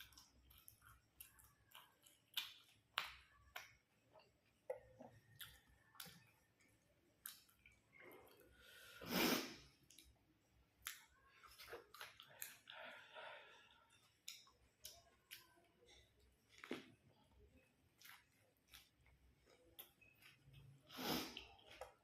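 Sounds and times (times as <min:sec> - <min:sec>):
chewing food crunches: 0:00.0 - 0:06.3.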